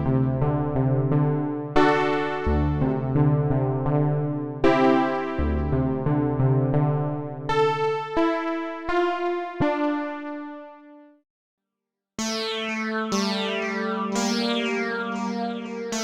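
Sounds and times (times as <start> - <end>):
synthesizer chords and bass: 0.0 - 10.2, 12.2 - 16.0
bright synthesizer patch: 12.2 - 16.0
synthesizer single notes ringing: 12.2 - 16.0.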